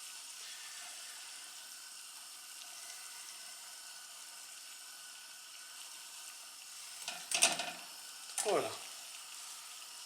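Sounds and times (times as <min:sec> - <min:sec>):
water boiling with bubbling hiss: 0:00.0 - 0:10.0.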